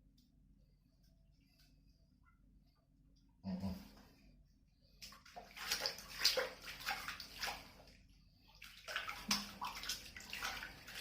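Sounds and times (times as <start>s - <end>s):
water splashing and sloshing: 3.8s - 11.0s.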